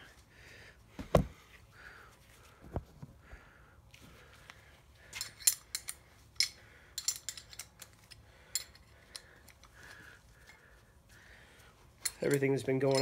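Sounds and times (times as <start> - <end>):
metal hand tools clinking: 5.0 - 9.8, 11.9 - 13.0.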